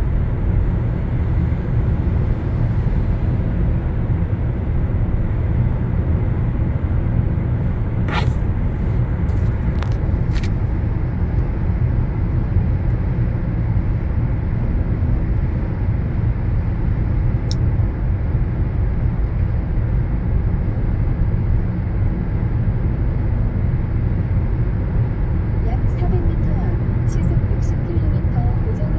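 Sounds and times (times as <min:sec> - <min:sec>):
car driving rumble: 0:07.9 - 0:13.0.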